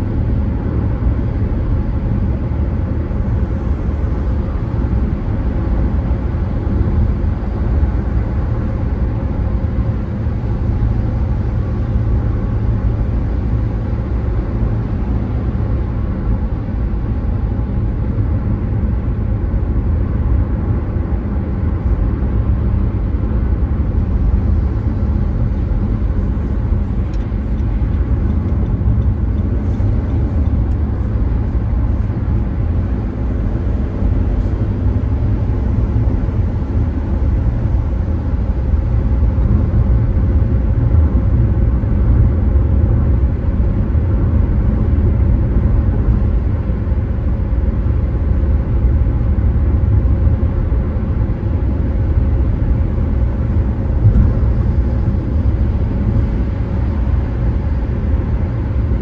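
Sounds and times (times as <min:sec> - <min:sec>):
car driving heard from inside: 0:00.0 - 0:59.0.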